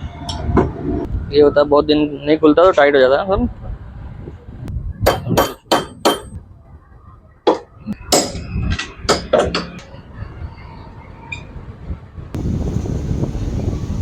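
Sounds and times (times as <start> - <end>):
hammer striking metal: 5.1 - 6.4, 7.5 - 9.9.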